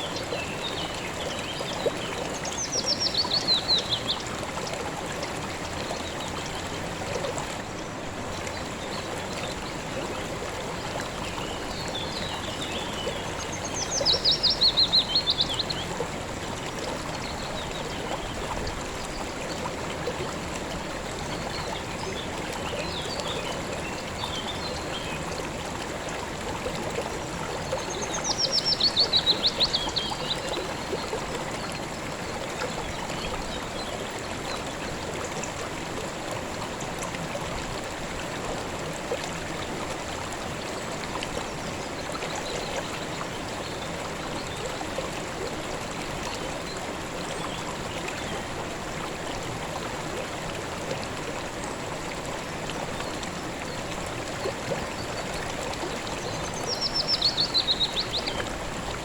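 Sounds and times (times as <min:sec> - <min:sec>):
river flowing over rocks: 0:00.0 - 0:59.0.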